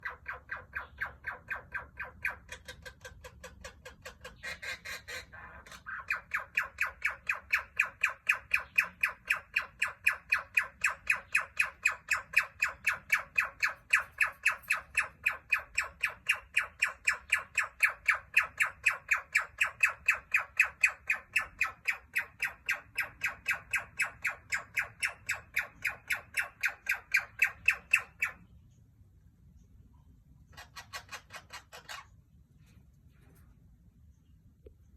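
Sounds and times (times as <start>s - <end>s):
parrot squawk: 0.0s - 28.5s, 30.5s - 32.2s
parrot calling harsh notes: 0.1s - 28.4s.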